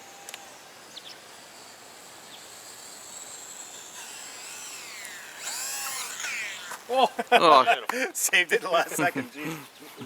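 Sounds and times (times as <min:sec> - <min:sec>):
rc plane motor whining: 0:00.0 - 0:07.2.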